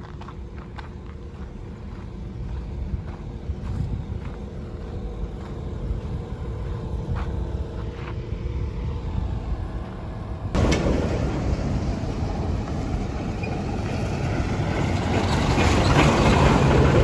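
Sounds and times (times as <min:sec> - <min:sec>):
vehicle low rumble: 0:00.0 - 0:17.0
loud rushing noise: 0:10.5 - 0:14.7.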